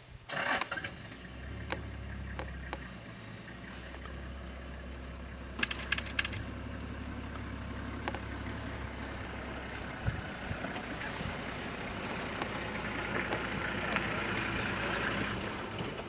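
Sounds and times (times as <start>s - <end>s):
vehicle engine idling: 0.7s - 16.0s
sharp clicks: 5.6s - 6.6s.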